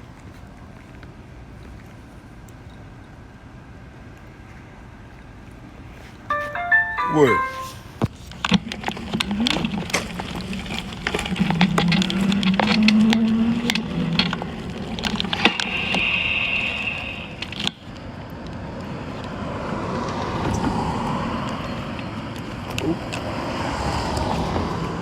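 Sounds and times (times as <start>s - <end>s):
high steady tone: 6.3s - 8.0s
car running with road noise: 8.6s - 16.6s, 17.3s - 25.0s.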